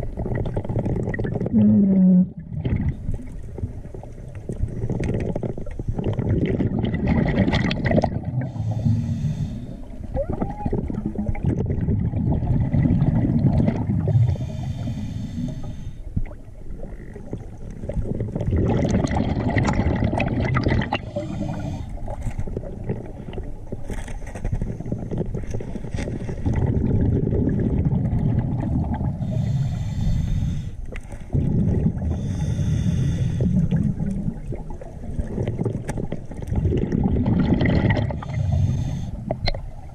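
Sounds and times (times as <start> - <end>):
bubbling regulator exhales: 0.0 - 23.8, 24.5 - 30.7, 31.3 - 39.9
hissing regulator inhales: 8.5 - 9.9, 14.1 - 16.1, 21.0 - 22.0, 29.2 - 30.8, 32.1 - 33.7, 38.2 - 39.3.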